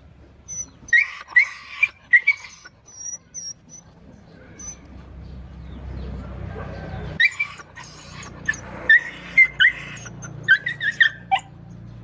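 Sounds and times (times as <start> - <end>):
small animal squealing: 0.5 - 3.9, 7.2 - 11.4.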